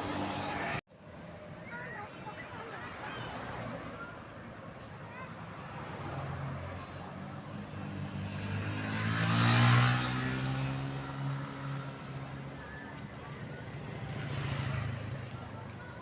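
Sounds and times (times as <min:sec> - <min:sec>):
vehicle driving past: 0:07.6 - 0:12.2.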